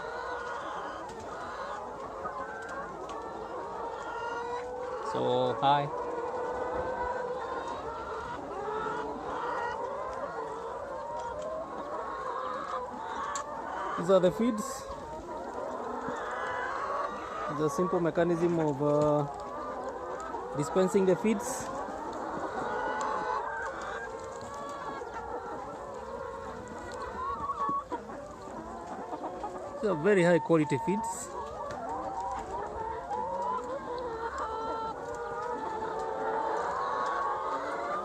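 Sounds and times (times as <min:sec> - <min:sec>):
hens clucking: 0:00.0 - 0:38.0.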